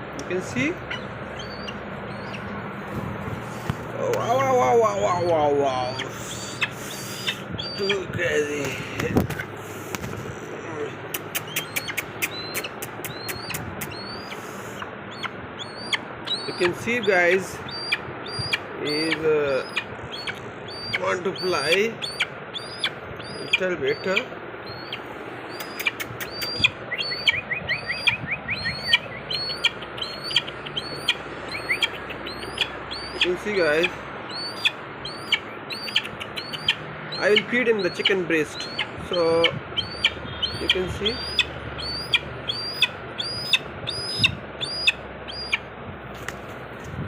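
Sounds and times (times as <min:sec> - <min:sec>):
eagle chick piping calls: 0:00.3 - 0:02.6, 0:03.5 - 0:10.1, 0:11.1 - 0:45.7.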